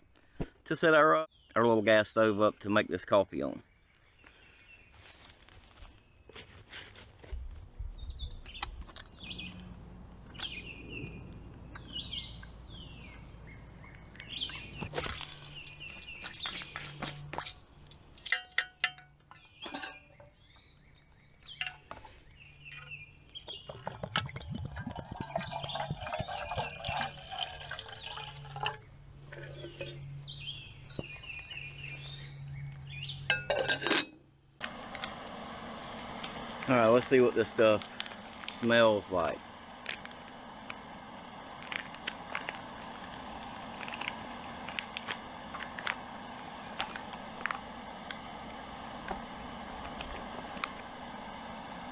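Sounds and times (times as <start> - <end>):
birds chirping: 1.0 - 6.4, 7.8 - 33.5
metal cookware clinking: 15.0 - 20.2, 33.3 - 34.2
water pouring: 23.8 - 29.9.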